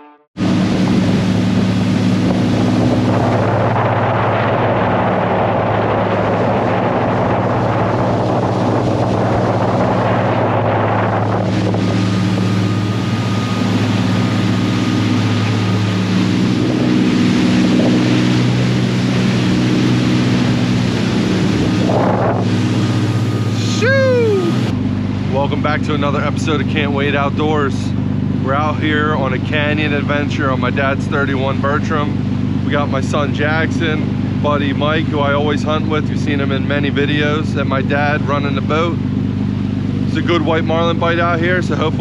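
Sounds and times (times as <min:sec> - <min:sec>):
boat engine drone: 0:00.0 - 0:42.0
wind: 0:00.0 - 0:42.0
rushing water: 0:00.4 - 0:25.2.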